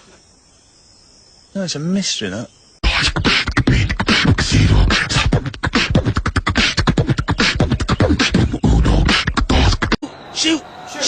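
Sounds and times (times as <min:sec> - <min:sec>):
beatboxing: 0:02.8 - 0:10.0.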